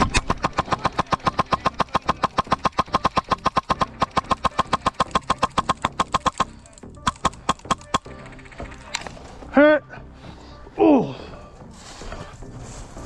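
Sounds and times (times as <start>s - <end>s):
airsoft gun firing rapidly: 0.0s - 8.3s.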